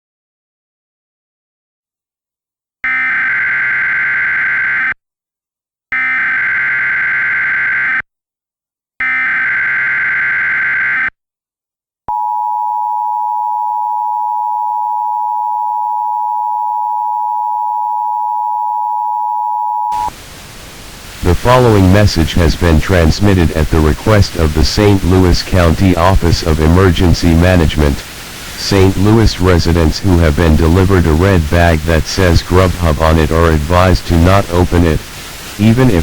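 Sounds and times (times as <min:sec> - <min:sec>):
two-tone attention signal: 0:12.1 - 0:20.1
data burst tones: 0:13.4 - 0:20.2.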